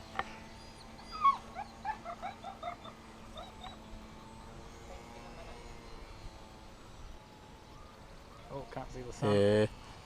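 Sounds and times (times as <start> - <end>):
high whimpering animal calls: 0.3 - 6.1.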